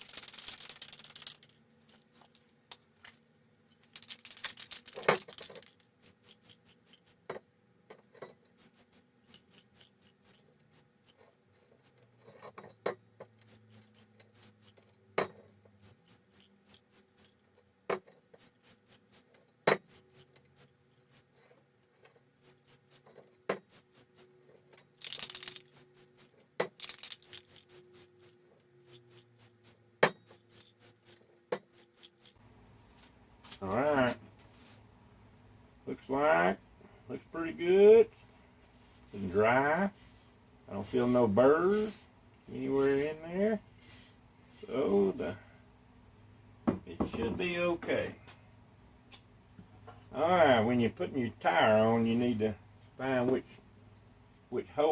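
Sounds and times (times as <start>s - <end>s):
faint fast regular ticking: 0.0s - 1.5s.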